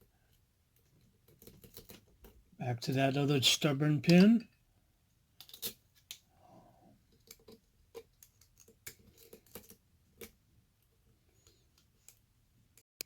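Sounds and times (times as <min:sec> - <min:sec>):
lock pick clicking and scraping: 0:05.4 - 0:06.2.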